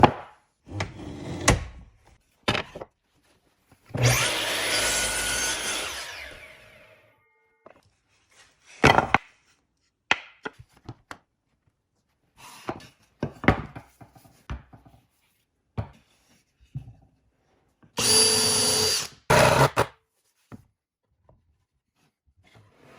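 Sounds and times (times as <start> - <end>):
wood cutting noise: 3.9 - 7.2, 18.0 - 19.9.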